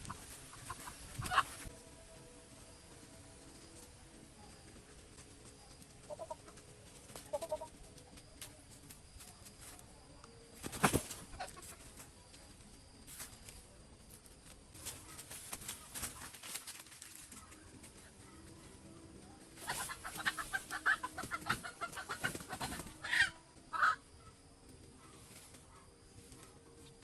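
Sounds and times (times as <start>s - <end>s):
chicken clucking: 0.0s - 1.7s, 6.0s - 8.6s, 9.2s - 12.4s, 14.8s - 24.2s.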